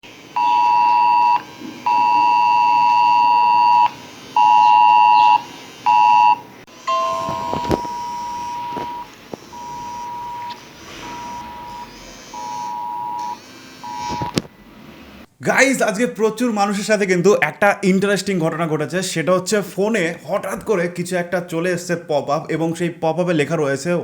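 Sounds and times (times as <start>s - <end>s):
two-pitch alert beeps: 0.4s - 14.3s
single-pitch beep pulses: 0.4s - 14.4s.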